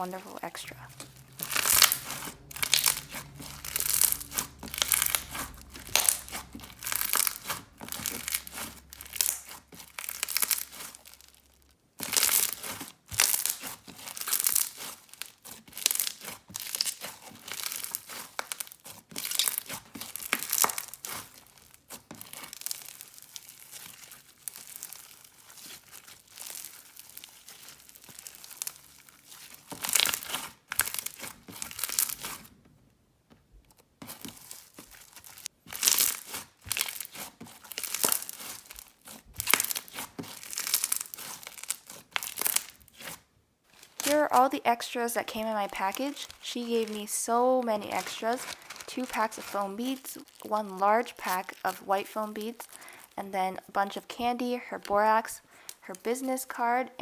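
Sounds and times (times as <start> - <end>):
foam slime crunchy crackling pops: 1.0 - 32.5, 34.0 - 44.4.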